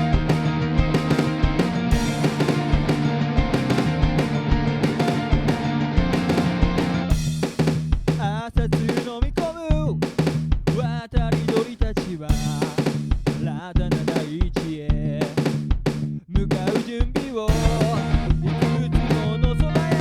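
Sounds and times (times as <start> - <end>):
wavering melodic lead line: 0.0 - 7.3, 17.5 - 20.0
held bass notes: 0.0 - 9.0, 9.7 - 11.6, 12.3 - 14.2, 14.8 - 16.8, 17.5 - 20.0
drum kit beat: 0.0 - 20.0.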